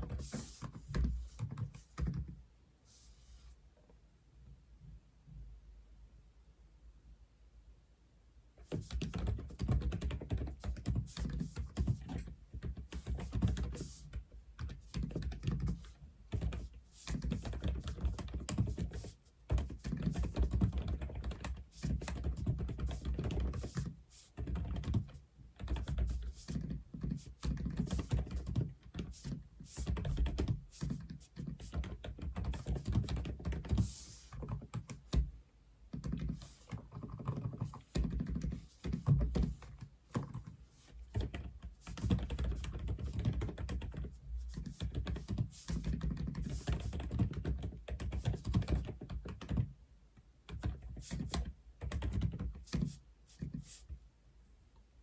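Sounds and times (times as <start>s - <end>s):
mechanical keyboard typing: 8.9s - 13.9s, 14.6s - 35.0s, 35.9s - 40.5s, 41.1s - 49.7s, 50.5s - 52.8s.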